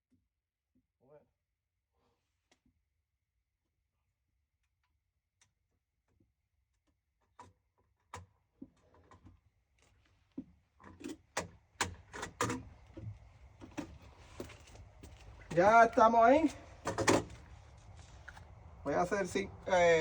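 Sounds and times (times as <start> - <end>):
handling clicks and knocks: 10.4 - 17.6.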